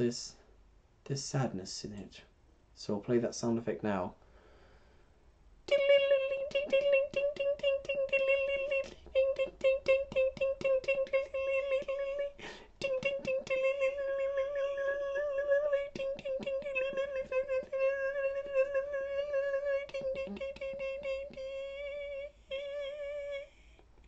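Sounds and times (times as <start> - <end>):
quick vocal clicks: 5.7 - 12.2.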